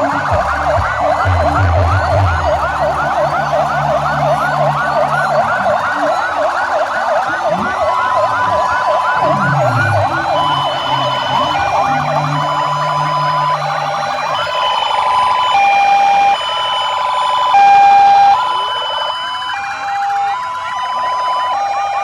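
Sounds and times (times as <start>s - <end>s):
low engine drone: 0.0s - 16.0s
sirens yelping: 0.0s - 22.0s.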